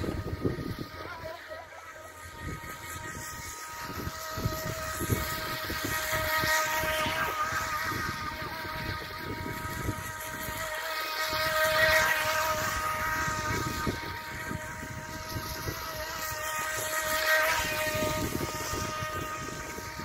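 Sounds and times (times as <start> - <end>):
model boat motor whining: 0.0 - 20.0
wind buffeting microphone: 0.0 - 20.0.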